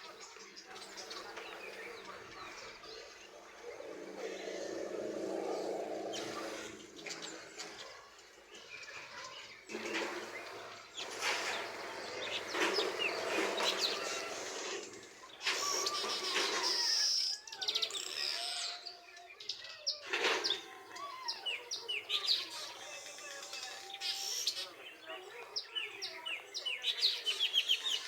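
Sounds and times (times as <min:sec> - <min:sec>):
birds chirping and whistling: 0:00.6 - 0:07.8, 0:09.8 - 0:28.0
rustling noise: 0:09.7 - 0:16.8.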